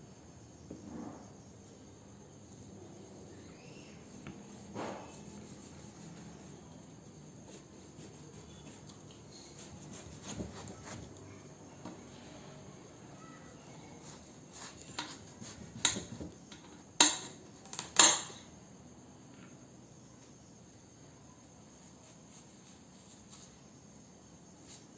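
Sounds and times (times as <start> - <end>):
crickets chirring: 0.0 - 24.9
knocks and scrapes cutting watermelon: 4.0 - 6.7, 7.3 - 11.2, 14.0 - 17.4.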